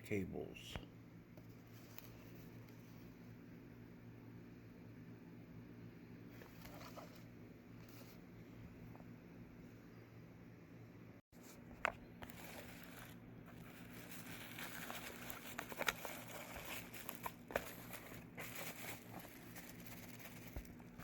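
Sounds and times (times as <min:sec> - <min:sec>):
packaging crinkling: 0:11.9 - 0:21.0.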